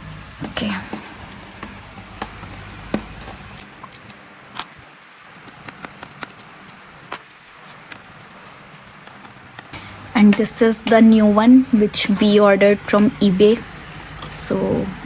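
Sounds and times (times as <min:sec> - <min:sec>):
clicks of handling laptop parts: 0:01.6 - 0:04.8, 0:05.4 - 0:09.4.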